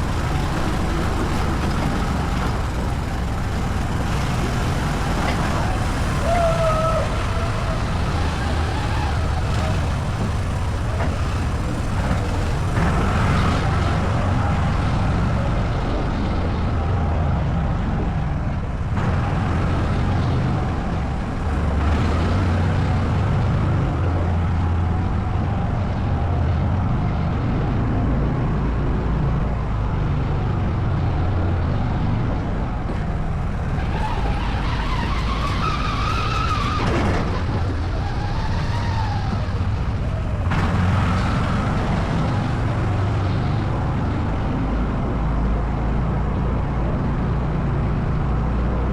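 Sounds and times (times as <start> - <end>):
atv engine running: 0.0 - 16.9, 36.9 - 45.4.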